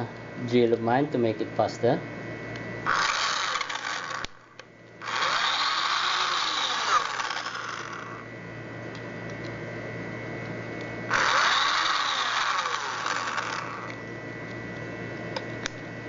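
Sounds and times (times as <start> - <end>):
electric drill driving screws: 2.9 - 8.2, 11.1 - 14.0.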